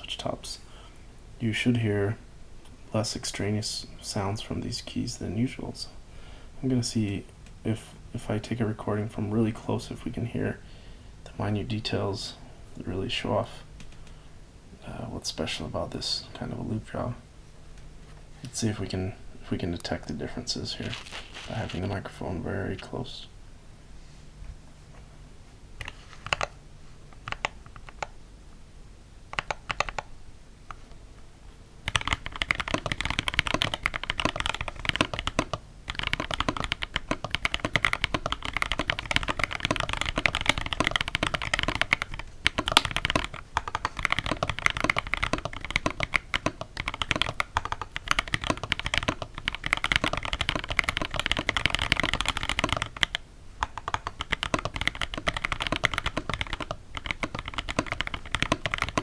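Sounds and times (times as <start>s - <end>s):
typing on mechanical keyboard: 25.8s - 26.6s, 27.2s - 28.1s, 29.3s - 30.1s, 31.9s - 59.0s.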